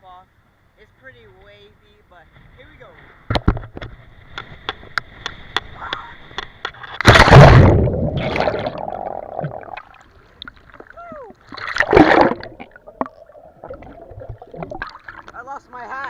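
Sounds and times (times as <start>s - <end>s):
big water splash: 7.0s - 15.3s
water churning: 7.0s - 15.6s.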